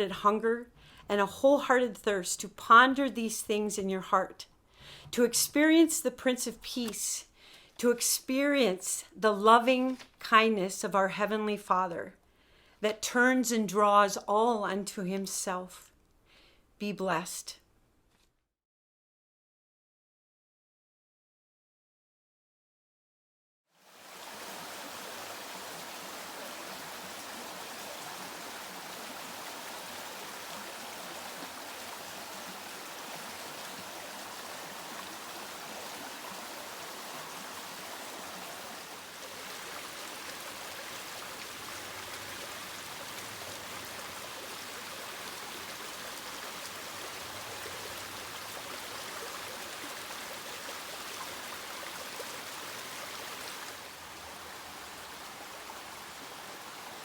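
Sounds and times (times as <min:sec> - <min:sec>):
stream rushing over rocks: 0:23.9 - 0:57.0.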